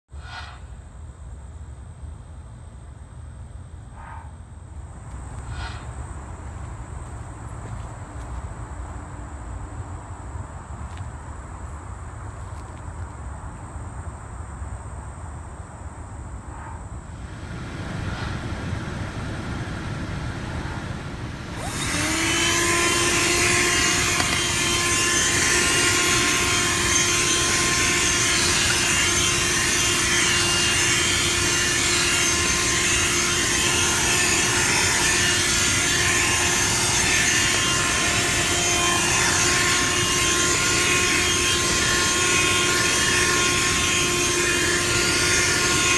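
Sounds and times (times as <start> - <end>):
car vacuum motor whining: 20.3 - 45.9.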